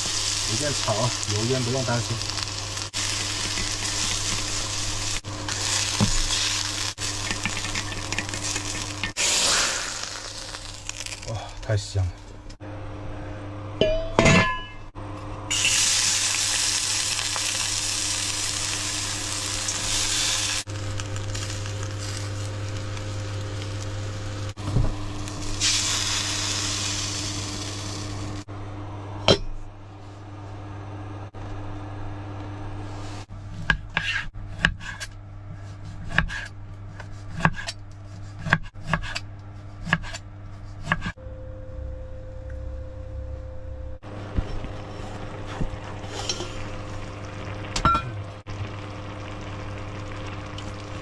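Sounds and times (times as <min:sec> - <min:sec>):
food sizzling in hot oil: 0:00.0 - 0:11.4, 0:15.5 - 0:28.5, 0:44.3 - 0:51.0
range hood fan hum: 0:00.0 - 0:51.0.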